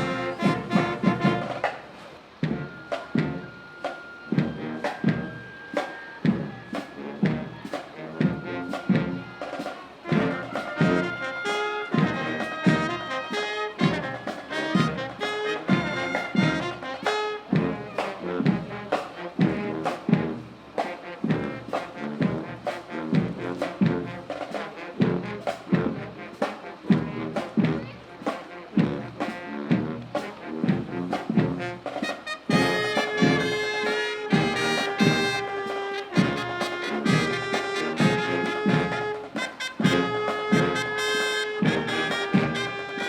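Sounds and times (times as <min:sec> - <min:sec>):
brass horns playing: 0:00.0 - 0:43.0
steady drum beat: 0:00.0 - 0:43.0.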